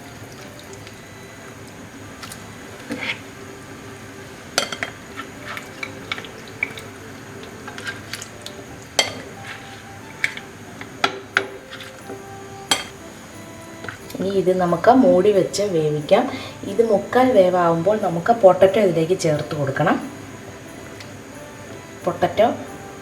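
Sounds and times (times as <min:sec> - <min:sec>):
faint steady hum: 0:00.0 - 0:23.0
utensil clinking on cooking pot: 0:04.4 - 0:13.1.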